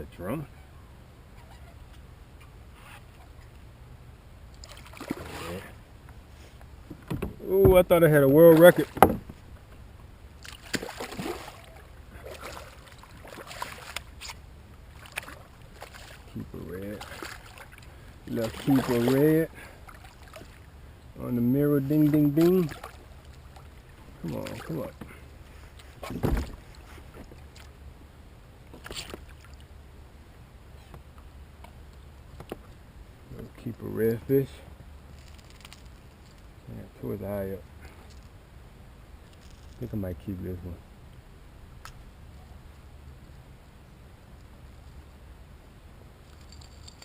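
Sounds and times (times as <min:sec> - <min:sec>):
light water splashes: 0:04.4 - 0:05.8, 0:07.0 - 0:09.8, 0:10.4 - 0:21.2, 0:21.8 - 0:27.8, 0:28.6 - 0:29.8
thump against kayak hull: 0:06.9 - 0:07.9, 0:08.8 - 0:09.4, 0:26.0 - 0:26.6.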